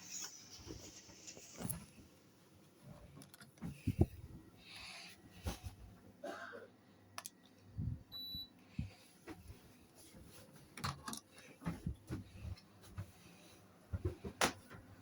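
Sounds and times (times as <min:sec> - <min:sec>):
faint clicks and knocks: 0:02.9 - 0:04.2.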